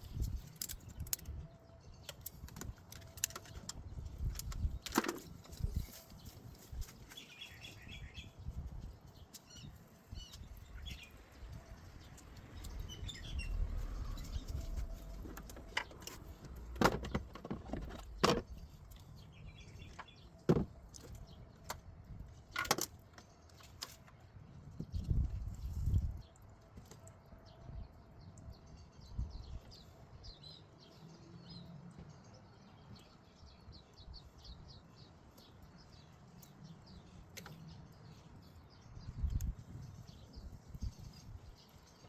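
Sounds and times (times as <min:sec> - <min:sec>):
sharp clicks and knocks: 0:15.2 - 0:19.0.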